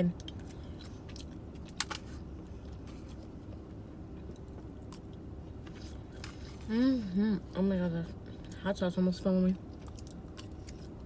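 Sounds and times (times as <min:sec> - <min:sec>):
low steady rumble: 0:00.0 - 0:11.0
person chewing food: 0:00.2 - 0:06.7, 0:09.7 - 0:11.0.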